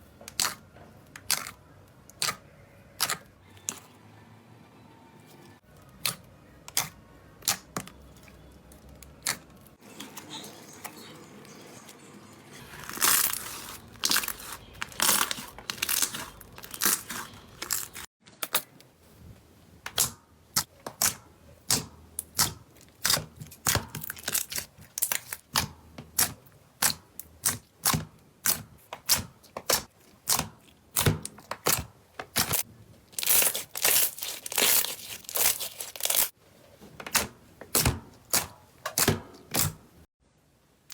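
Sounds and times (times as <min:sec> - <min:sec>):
slime popping and crackling: 0:12.7 - 0:18.7, 0:19.9 - 0:36.4.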